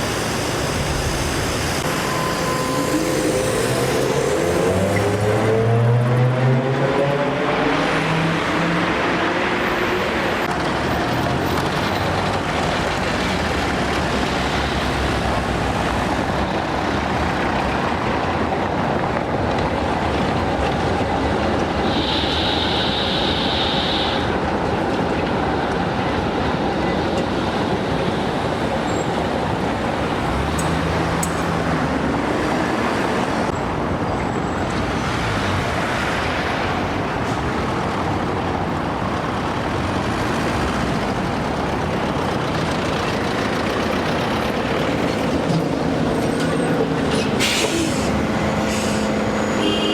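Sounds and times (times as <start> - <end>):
high squeal: 0.0 - 5.3
tram motor whine: 0.0 - 5.8, 21.4 - 28.0
tram wheels and motor: 0.0 - 6.3, 35.6 - 49.5.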